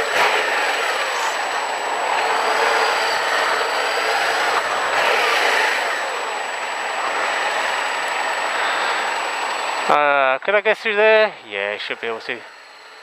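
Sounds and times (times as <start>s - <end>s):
motorcycle engine running: 0.0s - 10.2s.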